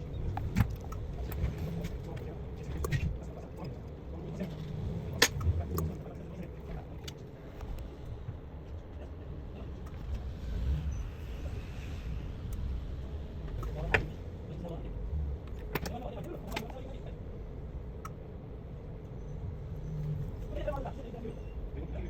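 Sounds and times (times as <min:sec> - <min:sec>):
low background rumble: 0:00.0 - 0:22.0.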